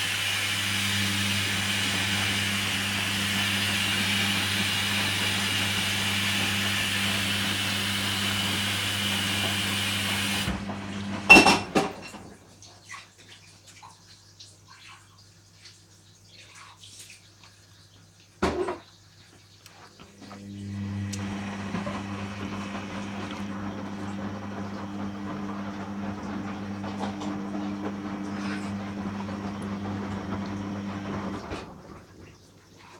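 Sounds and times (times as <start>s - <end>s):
washing machine low hum: 0.0s - 12.4s, 19.9s - 32.4s
water hissing into washing machine: 0.0s - 13.0s, 19.4s - 32.9s.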